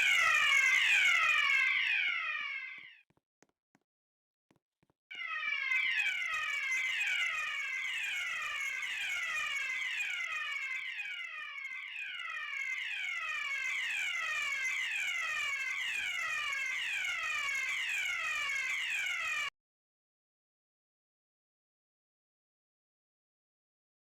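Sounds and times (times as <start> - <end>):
fire alarm falling sweep: 0.0 - 2.9, 5.1 - 19.5.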